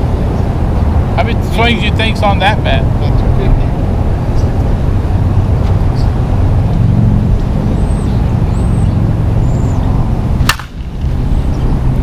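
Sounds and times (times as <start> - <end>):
low rumble with hum: 0.0 - 12.0
bat hitting softball: 10.4 - 11.1.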